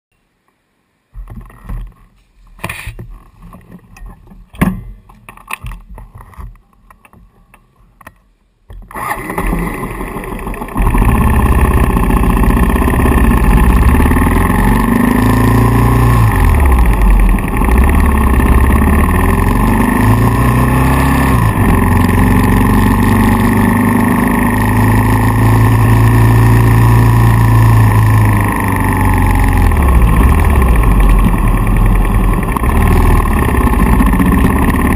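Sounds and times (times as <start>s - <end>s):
motorcycle engine starting and idling: 8.7s - 34.9s.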